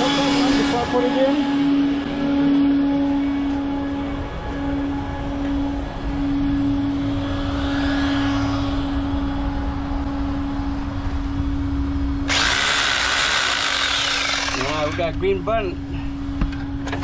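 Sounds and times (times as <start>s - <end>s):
low machine hum: 0.0s - 17.0s
faint whooshing: 1.4s - 12.2s.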